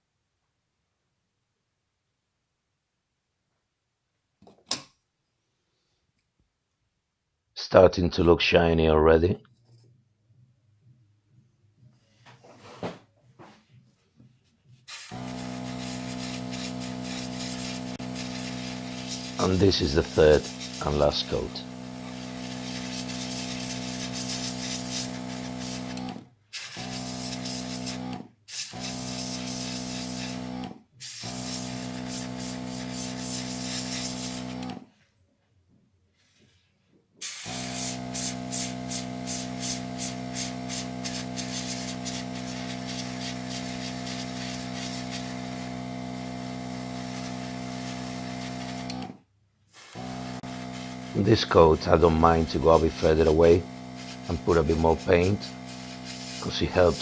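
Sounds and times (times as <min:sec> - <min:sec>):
air compressor humming: 0:14.8 - 0:34.9, 0:37.2 - 0:57.0
airbrush spraying hiss: 0:14.9 - 0:26.0, 0:26.6 - 0:34.6, 0:37.2 - 0:49.0, 0:49.7 - 0:57.0.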